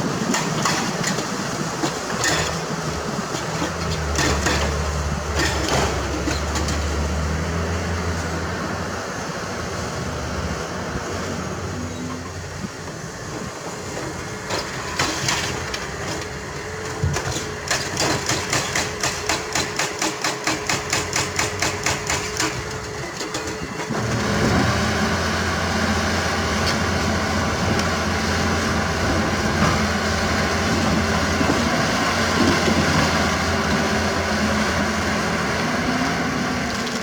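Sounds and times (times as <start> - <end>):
diesel engine humming: 21.0 - 37.0.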